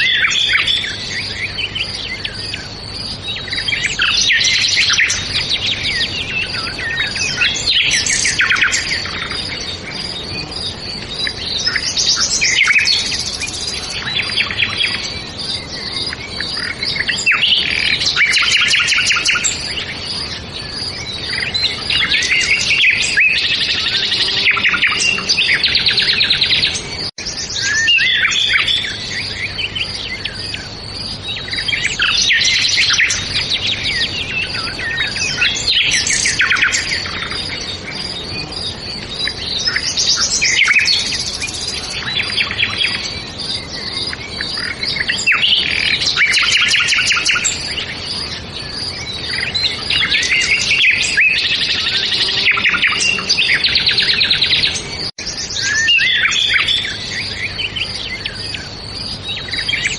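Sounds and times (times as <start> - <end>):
faint outdoor ambience: 0.0 - 59.9
songbirds singing and chirping: 0.0 - 59.9.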